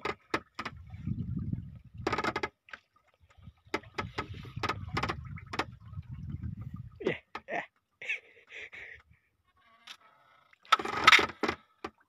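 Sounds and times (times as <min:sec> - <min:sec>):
low rumble of wind and water: 0:00.0 - 0:12.0
fishing gear clicks and knocks: 0:10.7 - 0:12.0.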